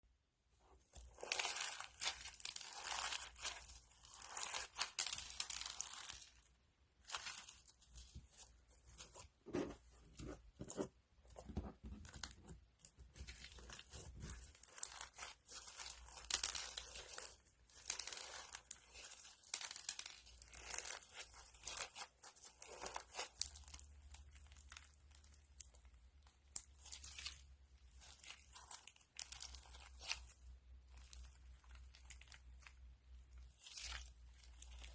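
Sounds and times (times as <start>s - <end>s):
crunchy slime crackling: 0.8s - 9.2s, 12.0s - 34.9s.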